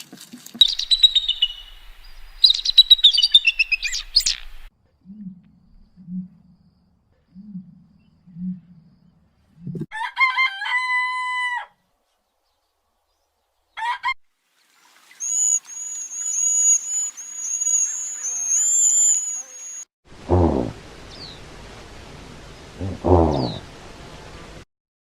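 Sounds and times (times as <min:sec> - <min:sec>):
high thin peeping calls: 0:00.6 - 0:04.7, 0:15.0 - 0:19.9
rooster crowing: 0:09.9 - 0:11.8, 0:13.8 - 0:14.2.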